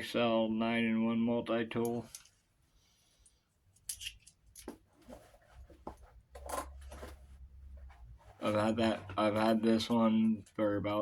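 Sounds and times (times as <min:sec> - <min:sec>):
faint metallic clicks and scrapes: 0:01.8 - 0:02.4, 0:03.1 - 0:10.7.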